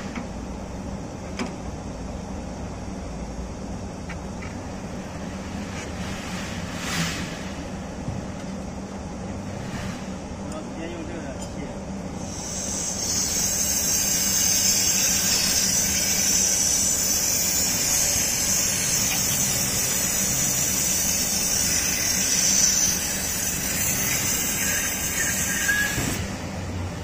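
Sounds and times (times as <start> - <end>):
pressurised gas hissing: 12.2 - 26.9.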